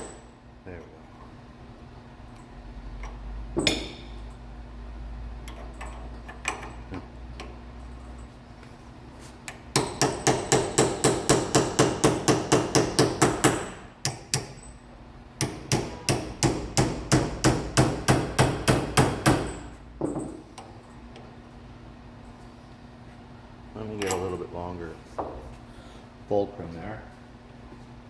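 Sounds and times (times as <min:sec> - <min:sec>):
hammer tapping a chisel: 0:09.5 - 0:14.6, 0:15.4 - 0:20.7.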